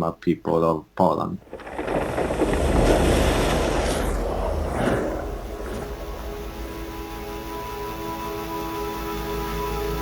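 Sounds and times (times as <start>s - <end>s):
low rumble: 1.4s - 8.4s
ambient music held tones: 4.0s - 10.0s.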